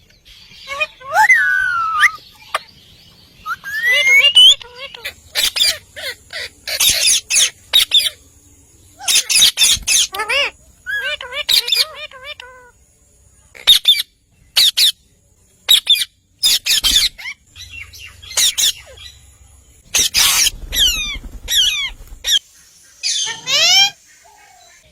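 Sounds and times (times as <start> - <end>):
parrots squawking: 0.6 - 2.7, 3.5 - 8.2, 9.0 - 12.8, 13.6 - 15.0, 15.7 - 19.2, 19.9 - 22.4, 23.0 - 24.8.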